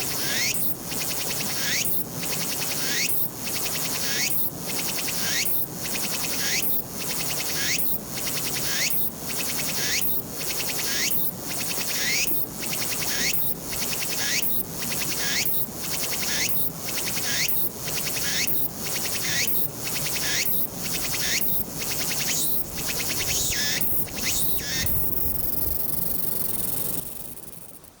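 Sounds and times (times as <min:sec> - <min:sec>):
cicada singing: 0:06.2 - 0:28.0.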